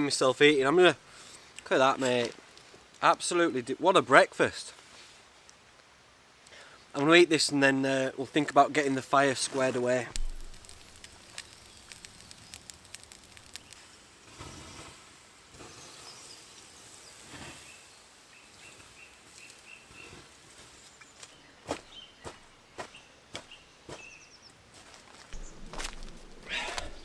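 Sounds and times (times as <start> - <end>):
faint steady hiss: 0.0 - 27.0
small clicks and rustles: 8.7 - 15.0.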